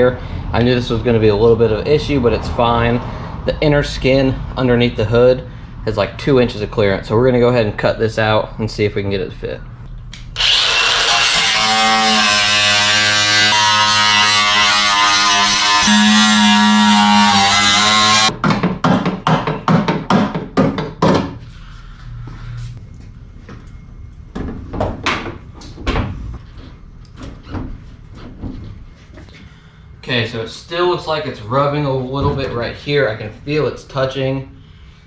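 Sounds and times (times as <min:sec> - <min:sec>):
power tool cutting sheet metal: 0:10.4 - 0:18.3.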